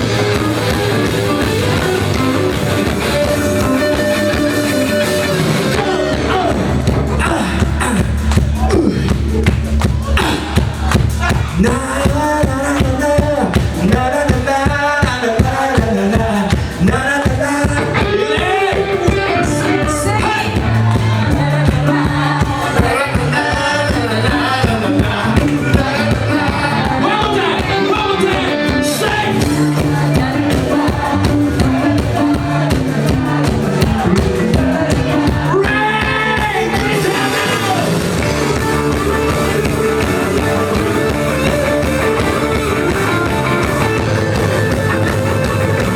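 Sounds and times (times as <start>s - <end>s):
bass guitar: 0.0s - 45.9s
drums: 0.0s - 45.9s
live rock band playing: 0.0s - 45.9s
person singing: 0.0s - 45.9s.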